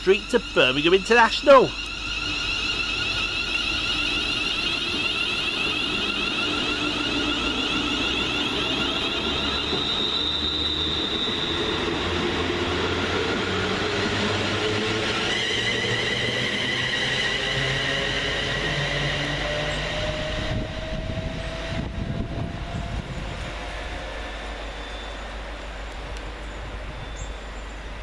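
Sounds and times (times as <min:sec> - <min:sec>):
train motors whining: 0:00.0 - 0:27.4
train rumble: 0:00.0 - 0:28.0.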